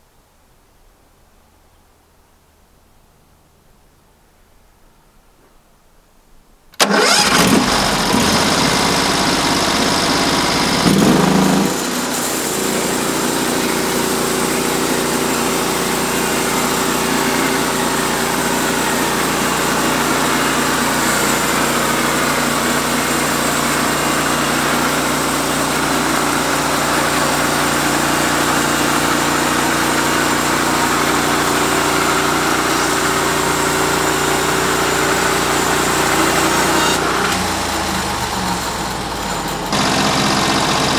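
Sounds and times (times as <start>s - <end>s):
sawmill engine running: 6.8s - 40.9s.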